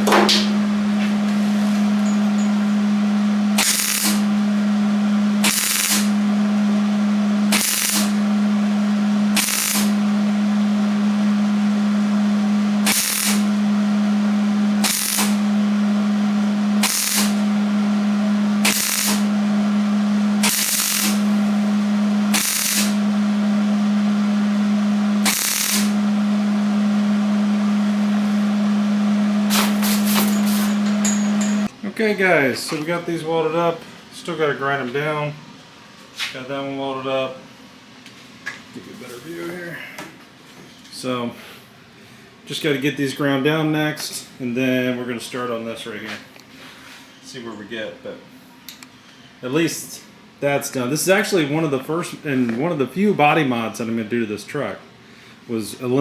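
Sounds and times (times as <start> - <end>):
welding buzz and crackle: 0.0 - 31.7.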